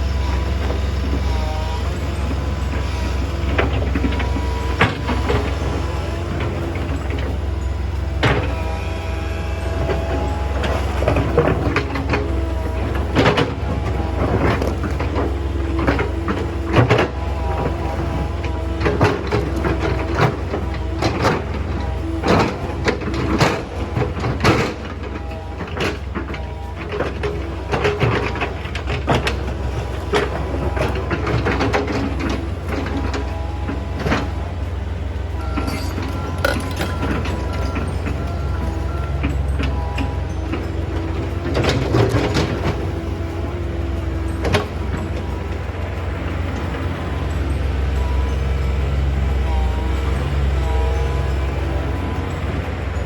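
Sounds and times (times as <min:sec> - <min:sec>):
excavator diesel engine running: 0:00.0 - 0:53.0
hydraulic whine: 0:00.0 - 0:53.0
stones knocking on steel bucket: 0:35.6 - 0:37.5.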